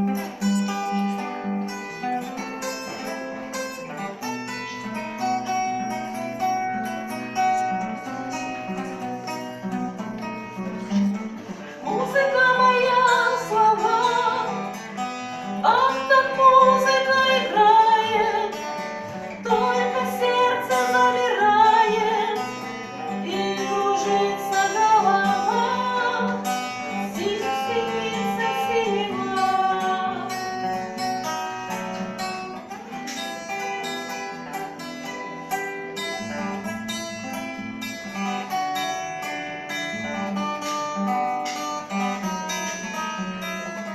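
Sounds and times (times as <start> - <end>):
acoustic guitar: 0.0 - 43.9
person singing: 11.7 - 31.0.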